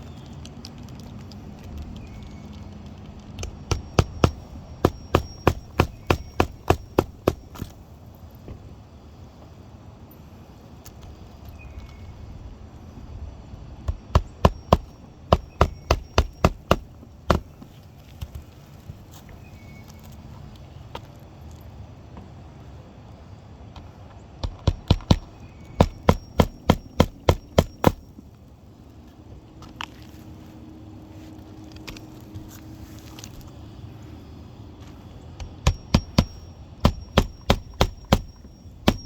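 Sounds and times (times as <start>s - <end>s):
hammer blows: 3.4s - 7.8s, 13.9s - 17.6s, 24.4s - 28.2s, 35.4s - 39.0s.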